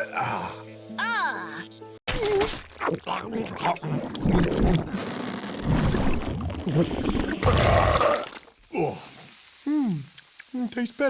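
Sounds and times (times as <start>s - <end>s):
long wet burp: 2.2s - 9.0s.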